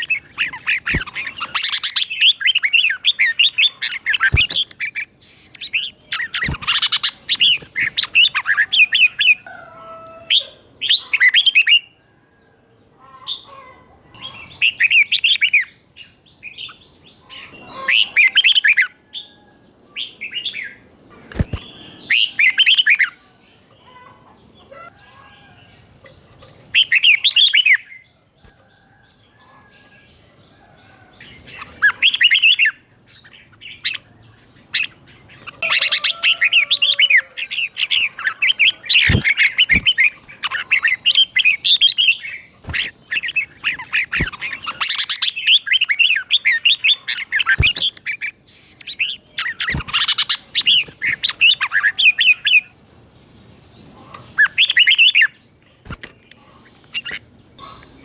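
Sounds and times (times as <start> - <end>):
bulbul singing warbled phrases: 0.0 - 9.4, 31.2 - 52.8.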